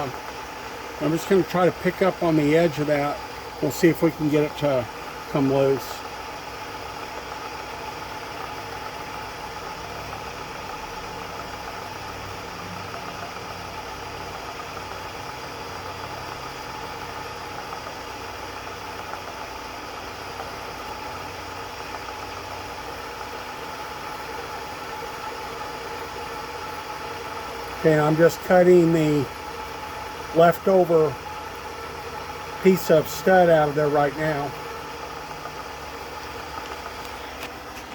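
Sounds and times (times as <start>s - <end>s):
milling machine cutting metal: 0.0s - 37.9s.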